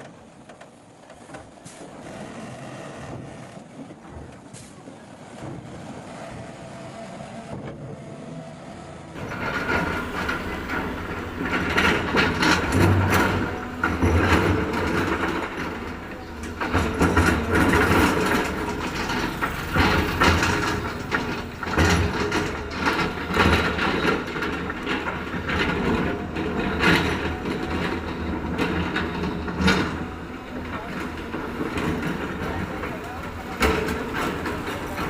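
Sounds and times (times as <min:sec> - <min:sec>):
diesel engine running: 0:05.9 - 0:35.0
metallic clanks and knocks: 0:09.2 - 0:35.0.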